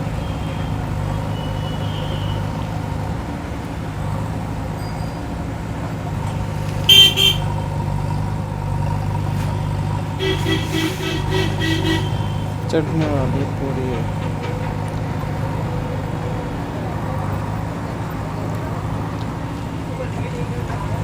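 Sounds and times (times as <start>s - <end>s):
heavy vehicle engine under load: 0.0s - 21.0s
vehicle horn toots: 0.2s - 2.5s, 6.8s - 7.7s, 9.4s - 12.6s.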